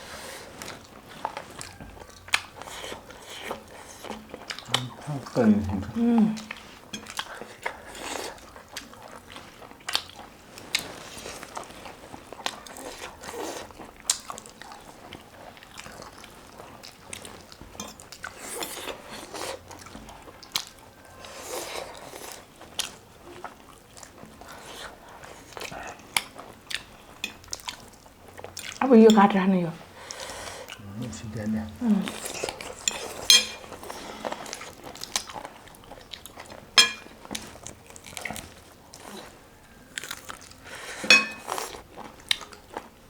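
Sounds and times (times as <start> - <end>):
person chewing and biting: 32.2 - 39.3, 39.9 - 42.9.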